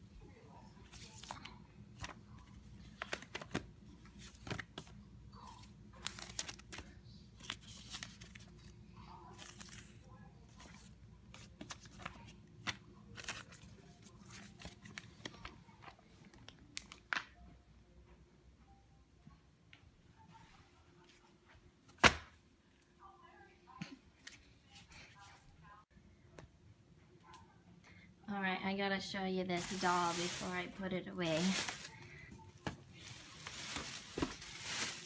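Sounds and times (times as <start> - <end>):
paper or plastic rustling: 29.6 - 35.0.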